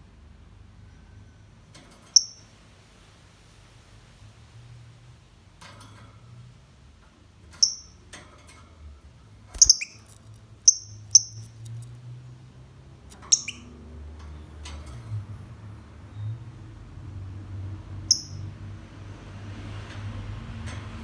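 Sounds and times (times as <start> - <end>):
bird chirping high-pitched: 2.2 - 2.5, 7.6 - 8.0, 9.6 - 11.9, 13.1 - 13.8, 18.1 - 18.5.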